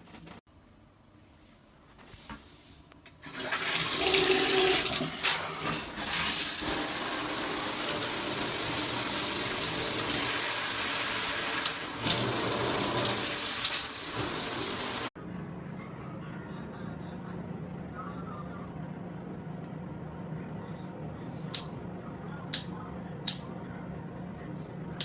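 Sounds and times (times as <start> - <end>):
shower head spraying water: 3.2 - 15.1.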